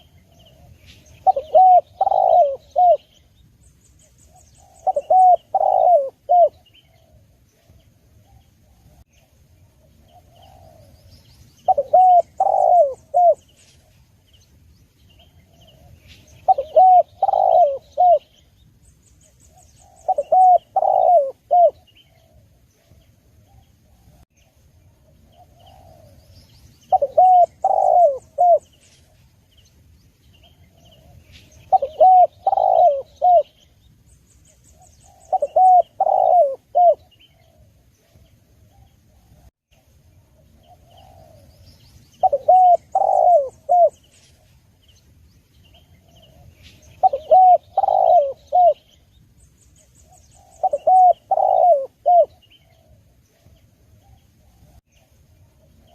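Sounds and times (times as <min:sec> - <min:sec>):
dove cooing: 0:00.0 - 0:03.3, 0:04.1 - 0:09.0, 0:09.8 - 0:14.0, 0:15.2 - 0:18.4, 0:19.5 - 0:24.2, 0:25.1 - 0:28.8, 0:30.4 - 0:33.7, 0:34.7 - 0:39.5, 0:40.4 - 0:44.1, 0:45.7 - 0:49.0, 0:49.8 - 0:54.8
small birds chirping: 0:00.0 - 0:55.9.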